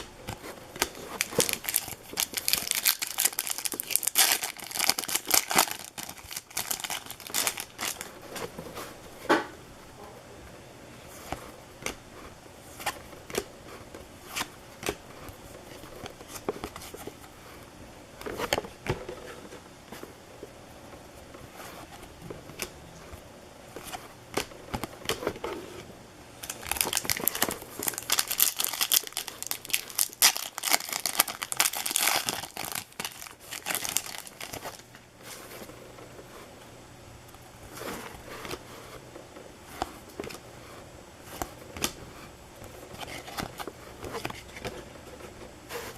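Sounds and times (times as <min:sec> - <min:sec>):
card pack wrappers tearing and crinkling: 0:00.8 - 0:08.1, 0:26.4 - 0:34.9.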